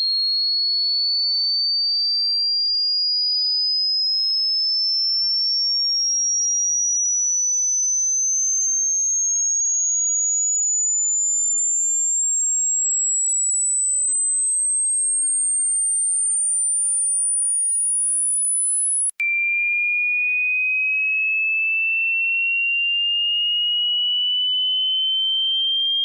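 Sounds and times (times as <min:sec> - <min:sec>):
high-pitched sine tone rising: 0:12.1 - 0:19.2, 0:23.7 - 0:26.0.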